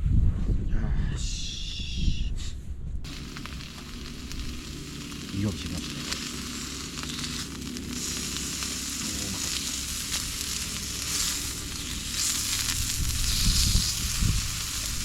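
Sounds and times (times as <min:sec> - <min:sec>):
meat sizzling in a frying pan: 0:03.1 - 0:15.0.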